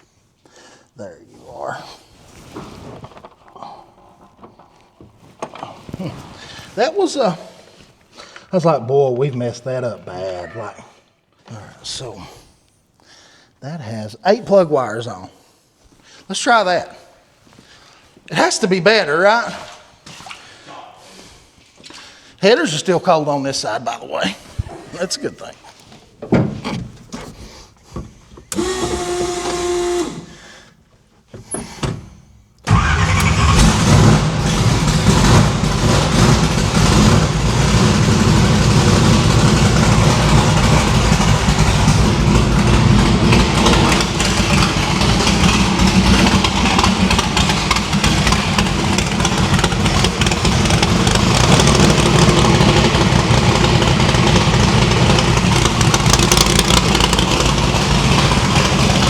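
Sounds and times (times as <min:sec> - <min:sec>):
engine starting and running: 0:28.4 - 0:30.4, 0:31.5 - 0:59.0.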